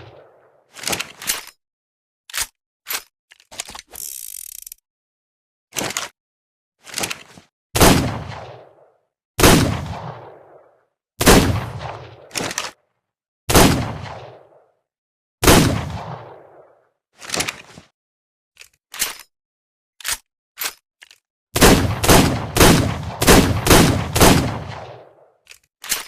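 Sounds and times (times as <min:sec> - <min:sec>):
revolver gunshots: 0:07.8 - 0:12.4, 0:13.5 - 0:14.6, 0:15.4 - 0:16.7, 0:21.6 - 0:25.2.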